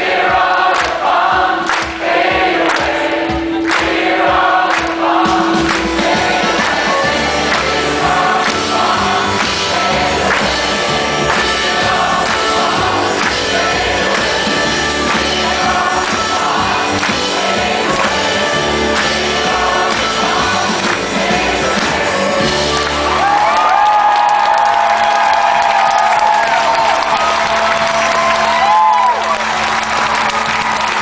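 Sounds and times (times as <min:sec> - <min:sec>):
crowd singing along: 0:00.0 - 0:23.6
live band playing: 0:01.4 - 0:24.1.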